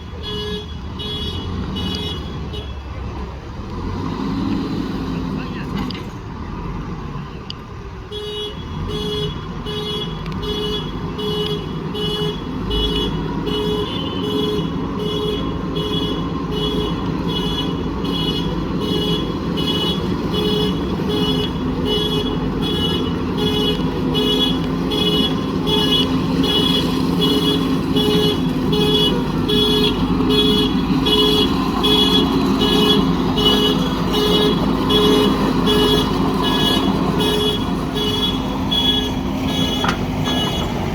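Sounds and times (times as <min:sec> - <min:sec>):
diesel engine under load: 0:00.0 - 0:40.9
reversing alarm beeping: 0:19.2 - 0:40.9.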